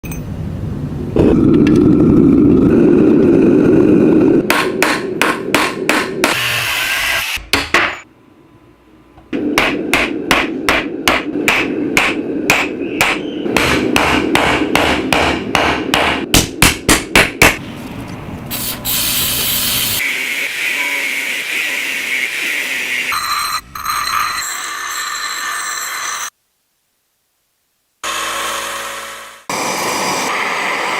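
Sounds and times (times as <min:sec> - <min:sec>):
hammer striking steel: 0:04.4 - 0:08.1, 0:09.4 - 0:17.6.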